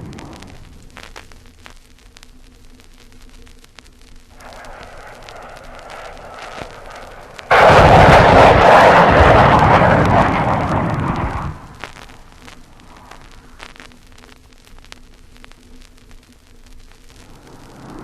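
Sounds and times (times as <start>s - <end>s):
record surface noise with clicks: 0.0s - 18.0s
large explosion: 4.4s - 12.0s.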